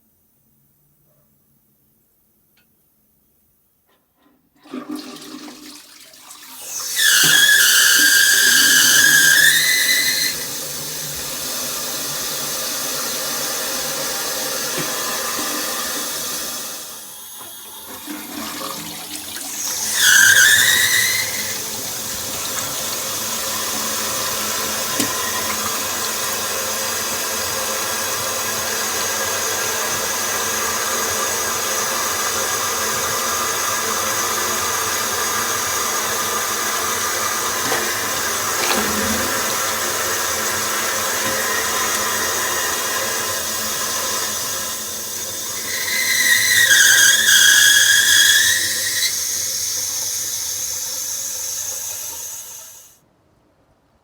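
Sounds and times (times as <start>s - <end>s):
toilet flushing water rushing: 4.5s - 53.0s.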